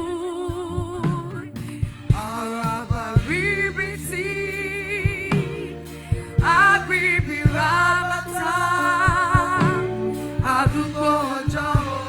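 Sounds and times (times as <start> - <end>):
keyboard and bass chords: 0.0 - 12.0
drum hits: 9.0 - 12.0.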